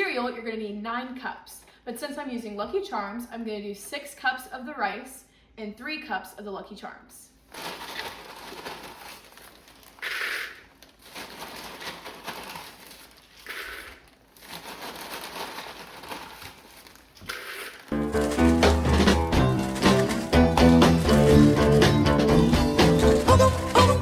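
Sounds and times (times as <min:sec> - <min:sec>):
cereal bags rustling: 0:07.4 - 0:24.0
dry cereal being poured and scooped: 0:07.5 - 0:18.7
music: 0:17.9 - 0:24.0.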